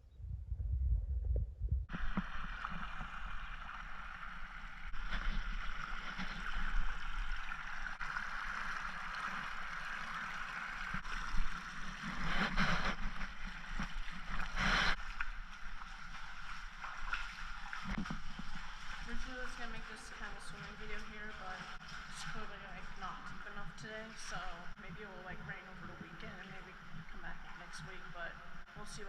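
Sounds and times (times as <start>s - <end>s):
low thumps: 0.0s - 3.5s
water rushing in a creek: 1.9s - 29.0s.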